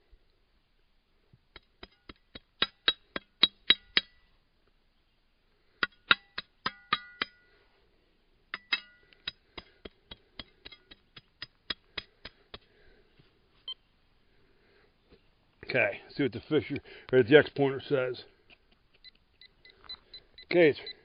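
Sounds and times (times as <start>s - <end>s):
metal tool clinking on soil: 5.8s - 7.5s, 8.5s - 12.7s.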